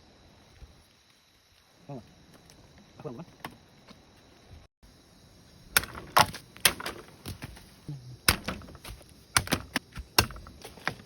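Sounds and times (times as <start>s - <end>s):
bamboo knocks: 5.8s - 7.6s, 8.3s - 11.0s.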